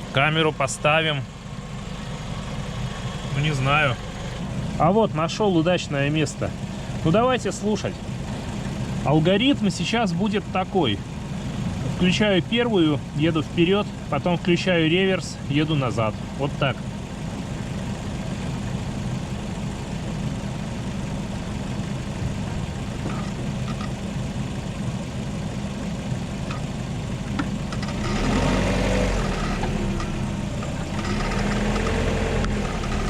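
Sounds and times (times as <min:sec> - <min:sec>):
car engine idling: 0:00.0 - 0:33.0
faint gear whine: 0:00.0 - 0:33.0.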